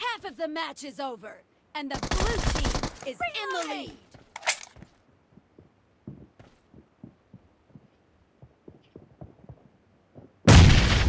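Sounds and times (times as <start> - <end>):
video game gunfire burst: 1.9 - 3.0
soft low thuds: 5.3 - 11.0.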